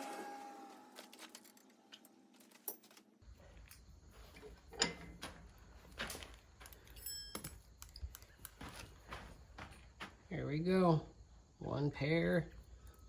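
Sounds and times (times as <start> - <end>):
metallic tool clinks: 4.7 - 5.2, 6.6 - 8.6.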